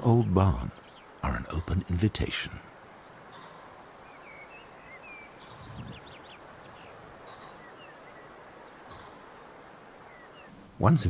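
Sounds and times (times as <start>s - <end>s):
steady outdoor hiss: 0.0s - 11.0s
small birds chirping and whistling: 3.0s - 10.6s.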